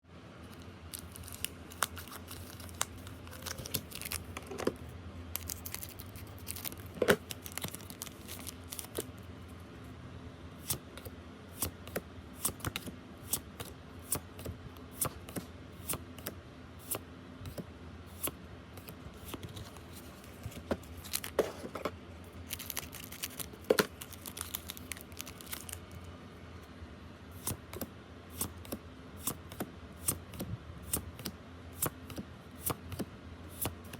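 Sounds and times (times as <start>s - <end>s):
cards shuffling: 0.5s - 4.8s, 5.4s - 9.1s, 18.8s - 21.9s, 22.5s - 25.9s
foil wrappers tearing: 0.9s - 4.5s, 5.4s - 9.0s, 21.0s - 21.4s, 22.4s - 25.9s.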